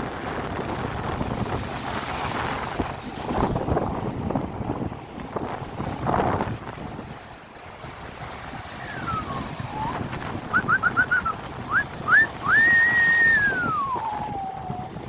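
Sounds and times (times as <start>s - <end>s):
surf: 0.0s - 15.0s
wind: 0.0s - 15.0s
person whistling: 8.8s - 14.9s.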